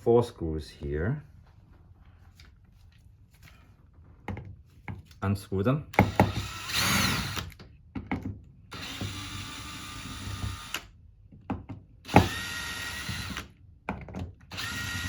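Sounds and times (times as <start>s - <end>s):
power drill running: 6.0s - 7.6s, 8.7s - 10.9s, 12.0s - 13.5s, 14.5s - 15.0s.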